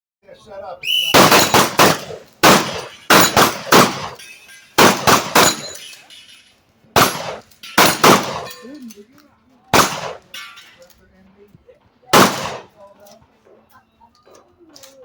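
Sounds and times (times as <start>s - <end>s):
shotgun shots: 1.0s - 4.2s, 4.8s - 5.8s, 7.0s - 8.6s, 9.7s - 10.3s, 12.1s - 12.8s
steel plates ringing: 2.8s - 9.0s.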